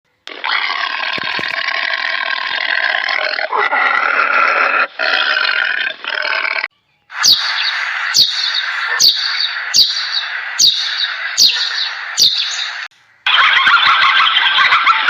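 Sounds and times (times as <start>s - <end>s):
animal harsh throaty calls: 0.3s - 15.0s
sharp chirp: 7.1s - 12.9s.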